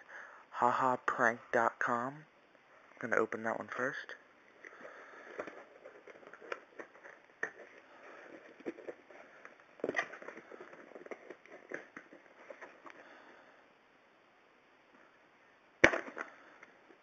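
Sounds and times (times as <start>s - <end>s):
packaging crackling and rustling: 4.6s - 13.2s.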